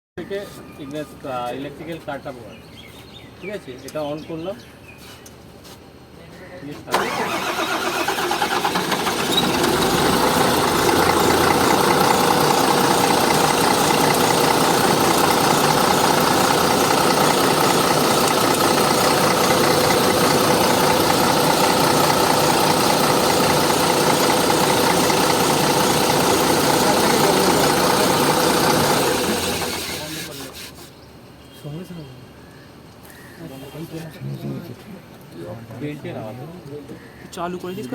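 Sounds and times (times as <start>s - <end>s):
engine idling: 6.9s - 30.5s.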